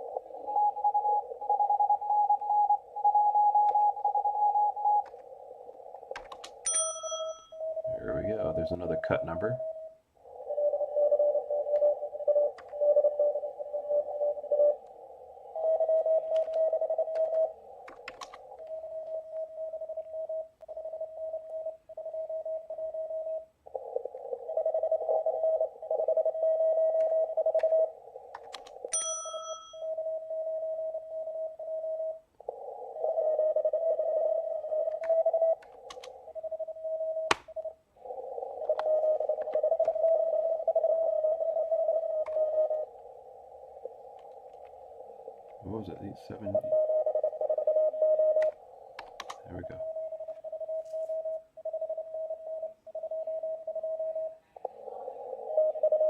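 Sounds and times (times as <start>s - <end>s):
sharp clicks: 6.1s - 6.7s, 12.5s - 12.8s, 16.3s - 19.4s, 27.0s - 28.9s, 34.9s - 36.2s, 37.2s - 37.7s, 38.6s - 40.2s, 44.1s - 44.8s, 48.4s - 49.5s
radio band noise: 7.8s - 17.8s, 34.6s - 51.8s, 52.4s - 56.0s
morse code beeping tones: 45.6s - 48.6s.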